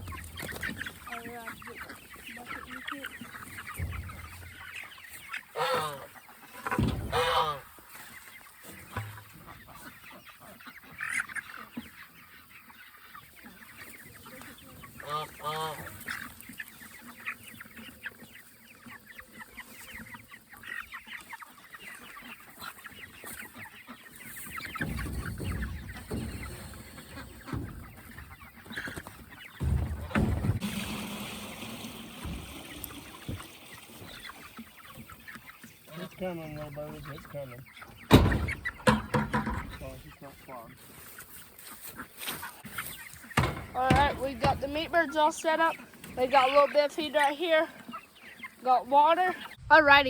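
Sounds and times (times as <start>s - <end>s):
chickens clucking and peeping: 0.0s - 50.0s.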